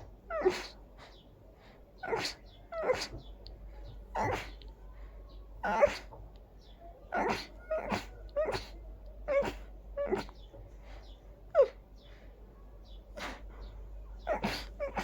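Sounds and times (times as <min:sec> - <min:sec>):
person sneezing: 0:14.3 - 0:15.0.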